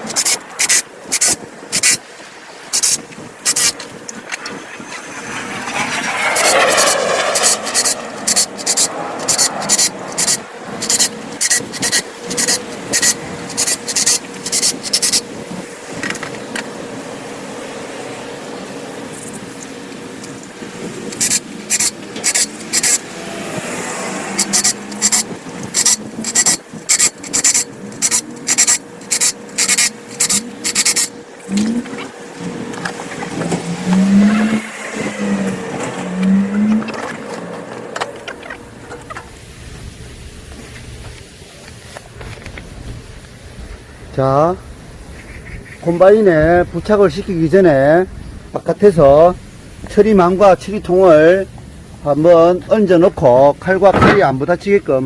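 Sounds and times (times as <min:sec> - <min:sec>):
metal parts scraping: 0:00.0 - 0:02.0, 0:02.7 - 0:15.2, 0:21.1 - 0:23.0, 0:24.4 - 0:32.1, 0:32.8 - 0:39.3
small motor running: 0:00.0 - 0:02.0, 0:02.7 - 0:16.3, 0:20.9 - 0:39.4
steady background hum: 0:00.0 - 0:55.0.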